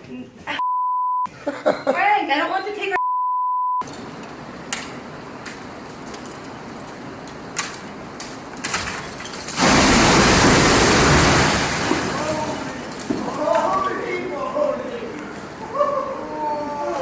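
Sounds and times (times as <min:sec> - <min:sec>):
censor bleep: 0:00.6 - 0:01.3, 0:03.0 - 0:03.8
loud even rushing noise: 0:09.6 - 0:12.2.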